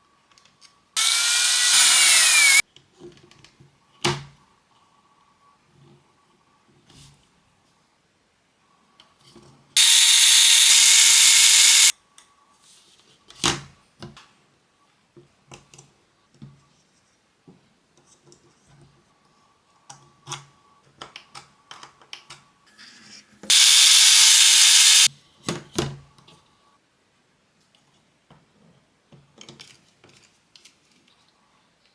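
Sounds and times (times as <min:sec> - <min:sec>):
loud steady hiss: 0:09.8 - 0:11.9, 0:23.5 - 0:25.1.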